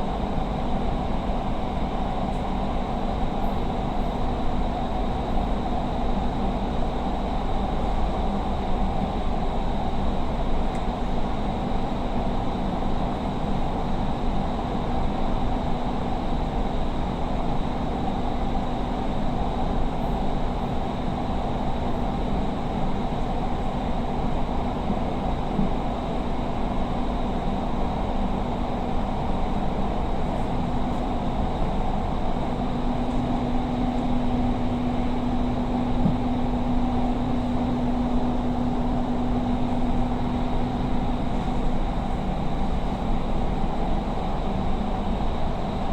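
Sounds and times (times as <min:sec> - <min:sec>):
train car running rumble: 0:00.0 - 0:45.9
low steady hum: 0:30.3 - 0:44.2.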